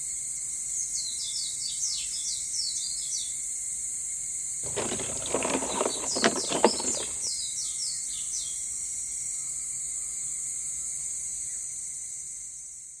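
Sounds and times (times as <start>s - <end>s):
clatter: 4.6s - 7.3s.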